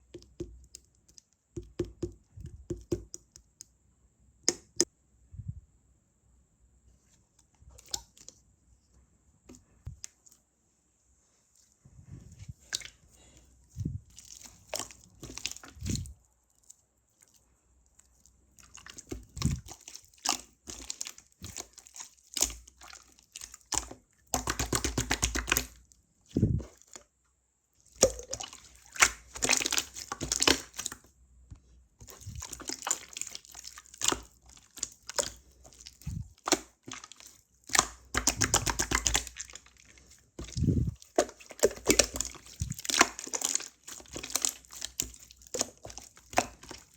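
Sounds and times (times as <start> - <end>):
slime squelching: 7.7 - 8.4, 11.5 - 27.2, 27.8 - 46.9
slime crackling and popping: 32.1 - 39.6.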